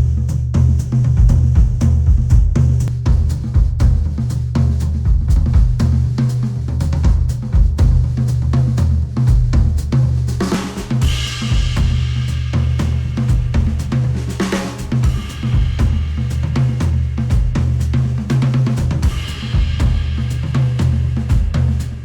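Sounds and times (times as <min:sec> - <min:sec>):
deep bass line: 0:00.0 - 0:22.0
drum kit steady beat: 0:00.0 - 0:22.0
cymbal crash: 0:11.0 - 0:13.5.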